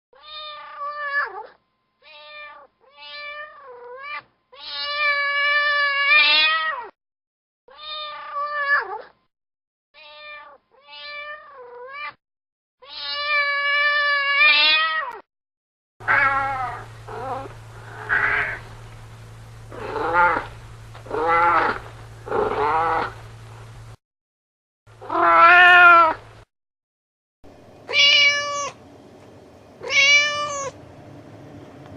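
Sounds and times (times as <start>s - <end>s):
cat meowing: 0.2s - 6.9s, 7.7s - 9.1s, 10.0s - 12.2s, 12.8s - 15.2s, 16.0s - 18.6s, 19.7s - 23.2s, 25.0s - 26.2s, 27.9s - 28.8s, 29.8s - 30.8s
steady low hum: 16.0s - 24.0s, 27.5s - 31.9s.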